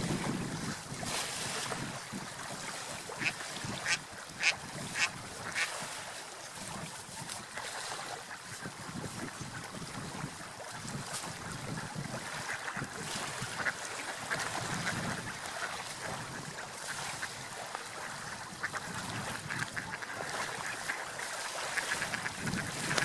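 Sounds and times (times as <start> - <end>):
ducks quacking: 3.1 - 5.8, 11.7 - 23.0.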